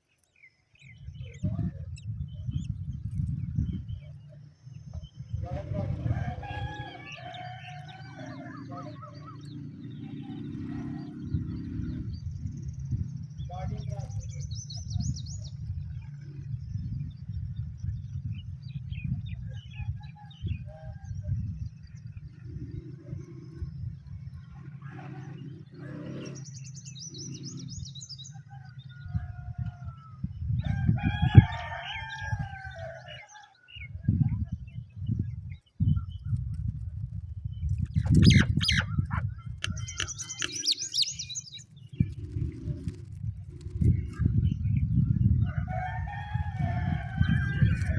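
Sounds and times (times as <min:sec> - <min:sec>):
steady low rumble: 0:00.8 - 0:32.5, 0:33.9 - 0:47.9
bird whistling and warbling: 0:38.0 - 0:42.3.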